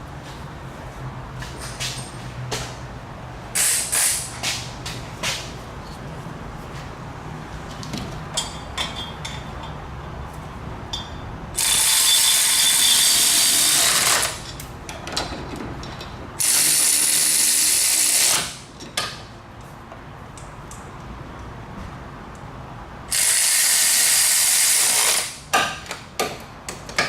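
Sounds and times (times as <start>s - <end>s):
pneumatic tool hissing whine: 3.6s - 4.4s, 11.6s - 14.4s, 16.4s - 18.6s, 23.1s - 25.4s
ratchet clicks: 16.4s - 18.6s, 23.1s - 25.4s.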